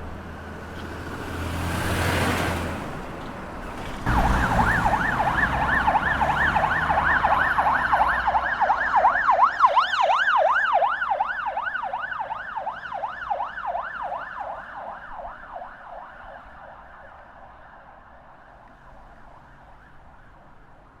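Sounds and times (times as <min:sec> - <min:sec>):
police siren fast yelp: 0:04.1 - 0:17.2.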